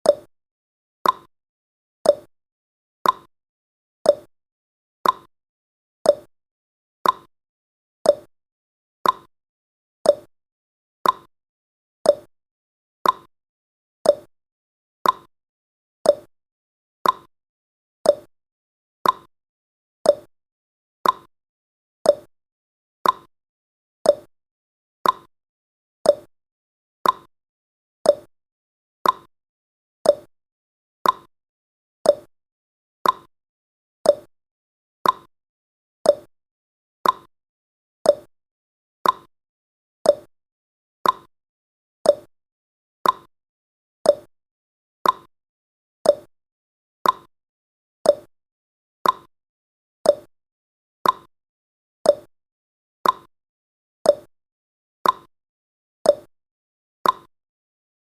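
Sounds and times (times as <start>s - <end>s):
clock ticking: 17.0s - 17.3s, 33.0s - 33.3s, 37.0s - 37.3s, 41.0s - 41.3s, 47.0s - 47.3s, 49.0s - 49.3s, 57.0s - 57.3s.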